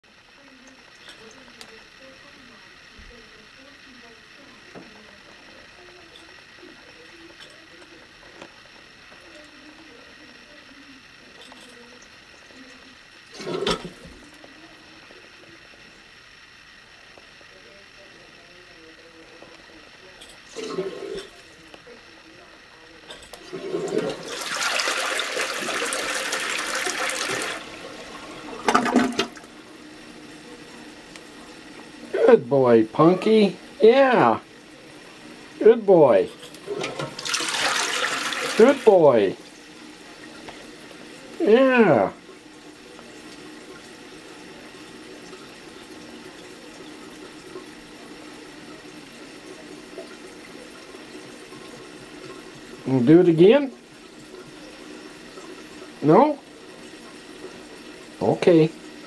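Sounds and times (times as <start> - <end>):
toilet flushing: 13.2 - 14.3, 20.5 - 21.5, 23.3 - 59.0
toilet refill hiss: 20.4 - 21.5, 23.3 - 59.0.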